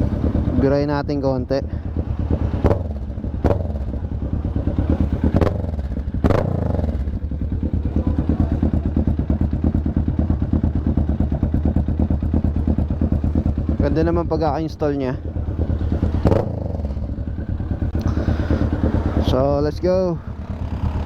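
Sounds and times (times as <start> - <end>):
motorcycle engine idling: 0.0 - 21.0.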